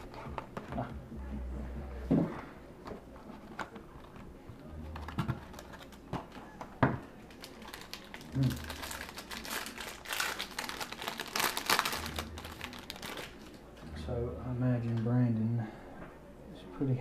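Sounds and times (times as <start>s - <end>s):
packaging crinkling and rustling: 3.2s - 13.7s.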